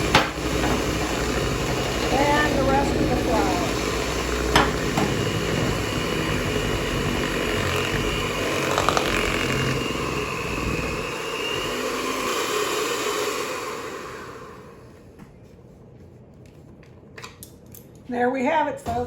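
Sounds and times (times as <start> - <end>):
electric mixer beating batter: 0.0 - 15.0.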